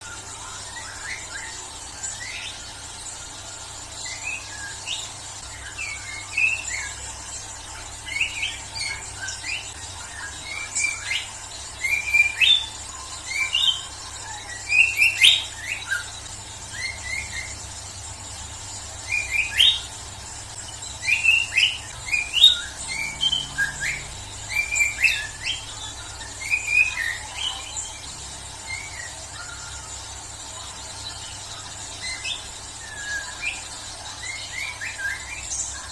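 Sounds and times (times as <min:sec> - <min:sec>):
bird whistling and chattering: 0:04.0 - 0:35.9.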